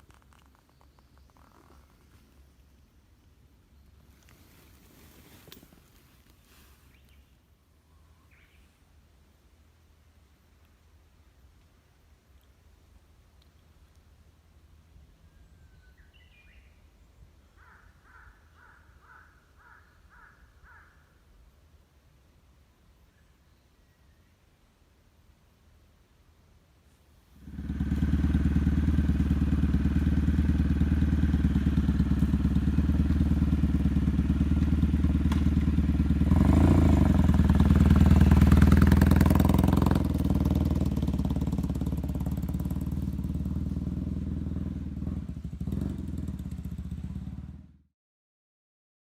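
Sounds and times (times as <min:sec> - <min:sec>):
motorcycle engine starting and running: 0:27.4 - 0:47.9.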